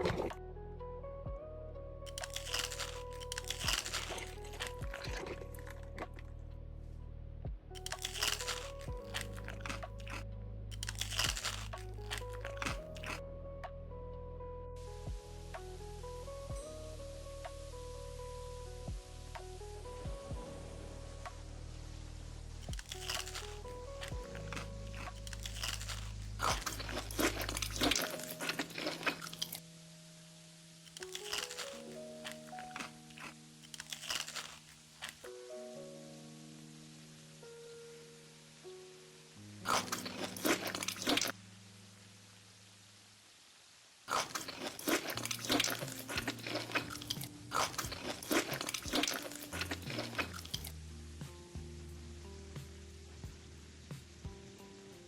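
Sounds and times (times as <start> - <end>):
crunchy food being chewed: 2.1 - 6.3, 7.8 - 13.2, 22.6 - 29.6, 30.9 - 35.3, 39.6 - 41.4, 44.1 - 50.7.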